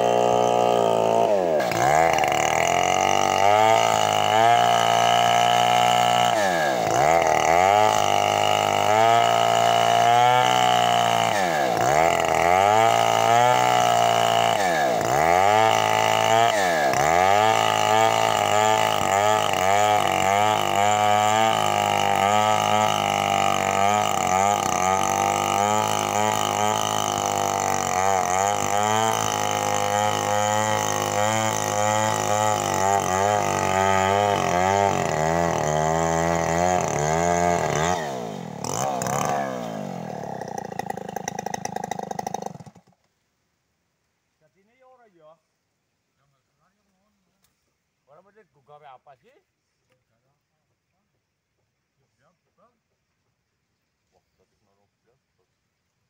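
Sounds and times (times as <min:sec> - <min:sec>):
chainsaw cutting wood: 0:00.0 - 0:43.2.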